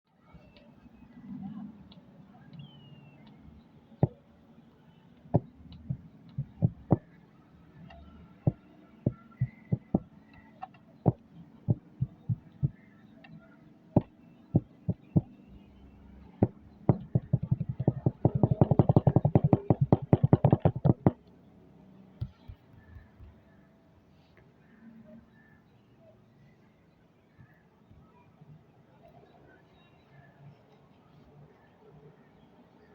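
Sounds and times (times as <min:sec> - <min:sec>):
short dull taps: 0:05.3 - 0:07.0, 0:08.4 - 0:10.1, 0:10.7 - 0:12.8, 0:14.0 - 0:15.4, 0:16.4 - 0:21.2.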